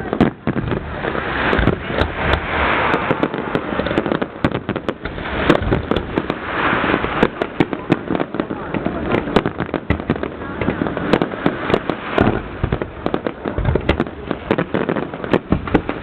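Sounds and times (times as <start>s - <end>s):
fireworks shells bursting: 0.0s - 8.4s
fireworks crackling: 0.0s - 16.0s.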